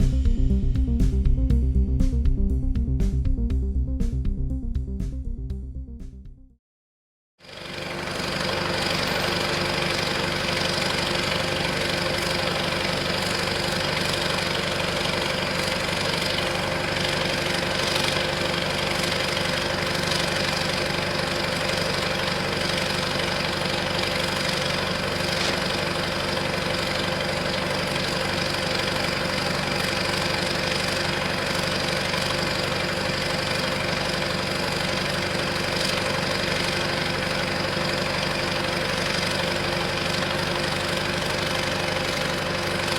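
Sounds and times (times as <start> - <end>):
steady high whine: 0.0 - 5.6
diesel truck engine idling: 7.5 - 42.9.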